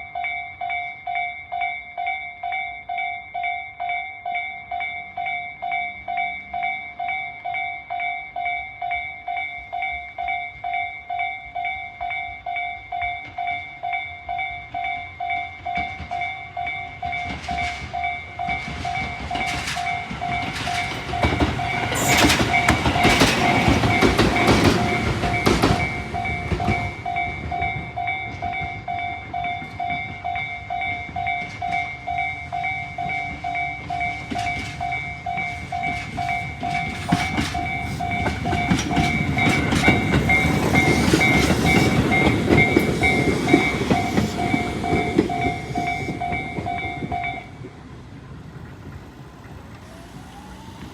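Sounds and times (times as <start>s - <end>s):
train wheels clattering: 15.2s - 50.9s.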